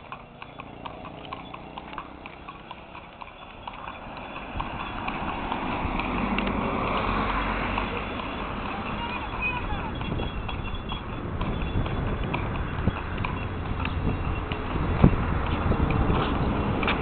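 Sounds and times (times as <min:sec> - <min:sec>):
horse hooves clip-clopping: 0:00.0 - 0:17.0.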